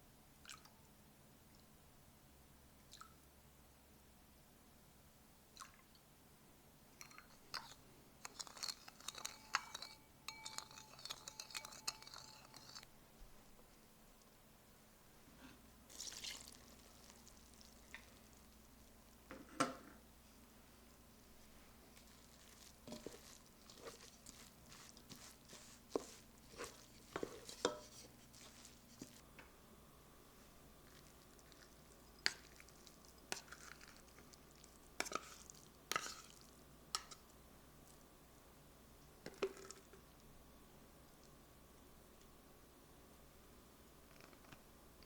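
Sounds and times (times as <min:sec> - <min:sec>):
kitchenware clinking: 0:07.0 - 0:12.9, 0:22.3 - 0:29.2.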